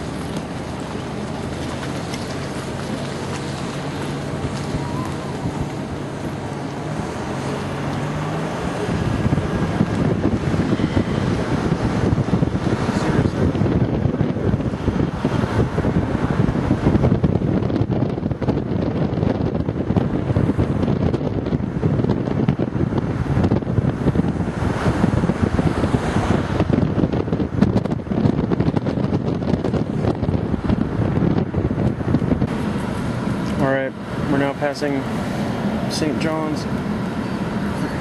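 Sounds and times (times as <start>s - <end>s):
car engine running: 0.0s - 38.0s
wind buffeting microphone: 0.0s - 38.0s.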